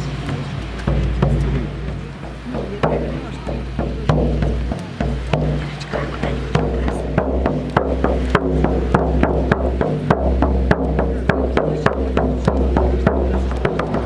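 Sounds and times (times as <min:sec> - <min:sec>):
deep bass line: 0:00.0 - 0:14.0
music with percussive beat: 0:00.0 - 0:14.0.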